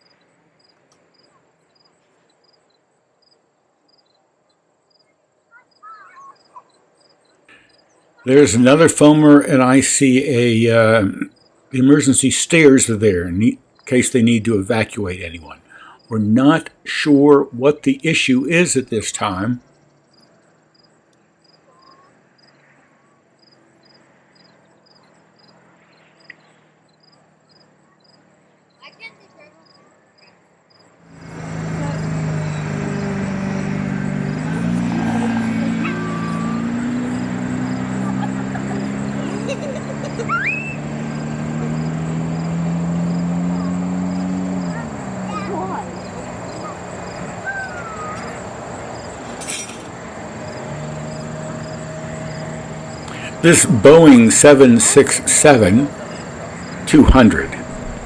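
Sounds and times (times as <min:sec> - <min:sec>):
crickets chirping: 0:00.0 - 0:04.2, 0:04.8 - 0:16.2, 0:18.8 - 0:22.8, 0:23.4 - 0:29.8, 0:30.7 - 0:58.0
low distant hum: 0:08.3 - 0:19.6, 0:31.1 - 0:58.0
insect chirping: 0:26.2 - 0:29.8, 0:35.4 - 0:53.4, 0:55.8 - 0:56.9.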